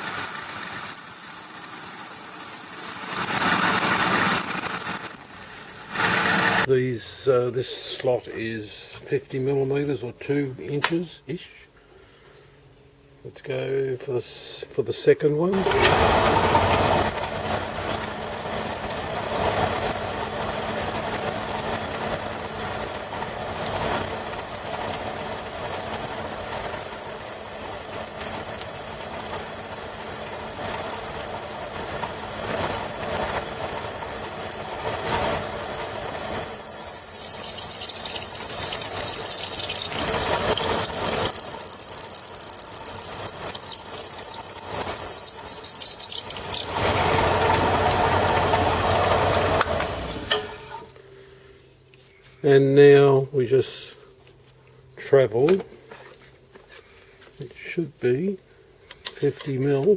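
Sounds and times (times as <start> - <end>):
metal-cutting machine running: 0.0 - 6.7, 15.6 - 50.4
high-pitched cutter squeal: 24.6 - 50.8.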